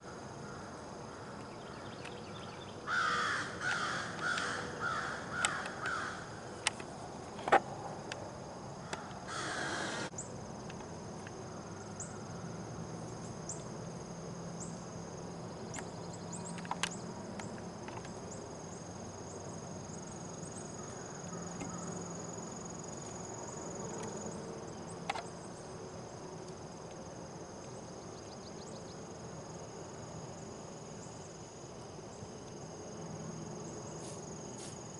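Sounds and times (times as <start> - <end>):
insects trilling: 0.0 - 34.9
deer hissing wheeze: 9.4 - 10.1.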